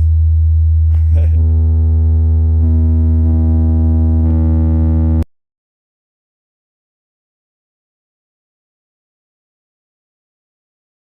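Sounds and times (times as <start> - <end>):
low-pitched tone through car speakers: 0.0 - 5.3.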